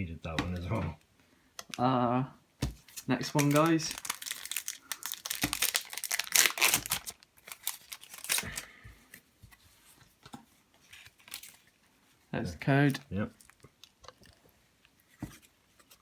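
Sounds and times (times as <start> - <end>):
foil wrapper tearing and crinkling: 2.9 - 8.7.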